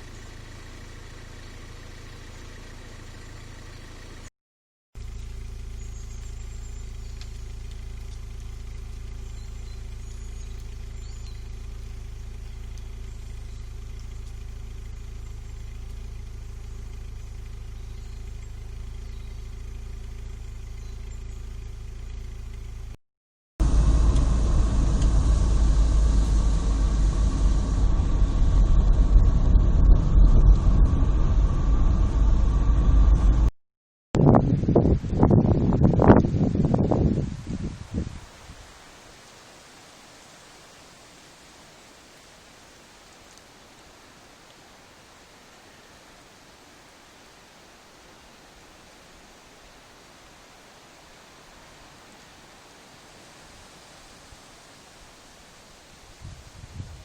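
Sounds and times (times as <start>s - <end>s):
steady low rumble: 5.0s - 23.0s, 23.6s - 33.6s, 34.2s - 38.6s
wind buffeting microphone: 34.2s - 38.6s, 56.1s - 57.0s.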